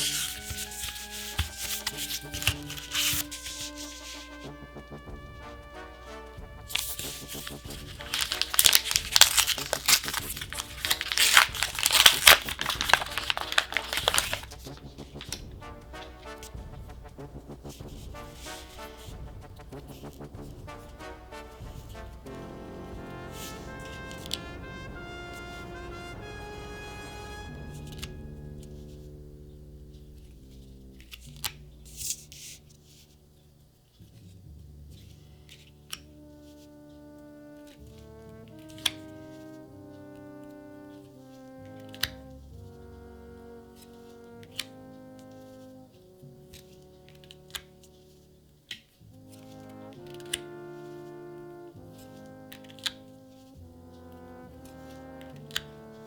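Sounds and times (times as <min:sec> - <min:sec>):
plastic packaging crinkling: 0:00.0 - 0:04.4, 0:06.7 - 0:15.4
quiet orchestral music: 0:00.0 - 0:56.0.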